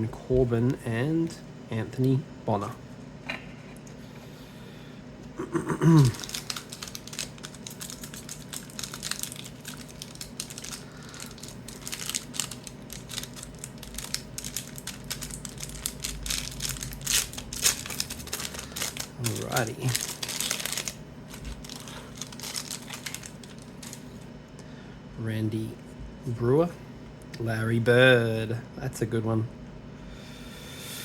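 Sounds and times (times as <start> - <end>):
short vocal sound: 5.4 - 6.2
wrapper tearing and crinkling: 6.0 - 24.2.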